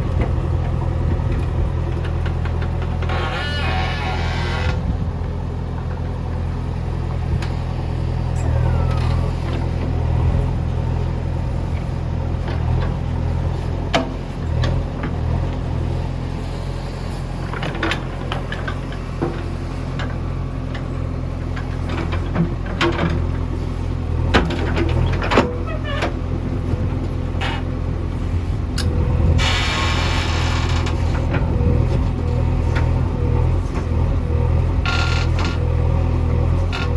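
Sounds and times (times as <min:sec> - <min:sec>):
diesel engine running: 0:00.0 - 0:36.9.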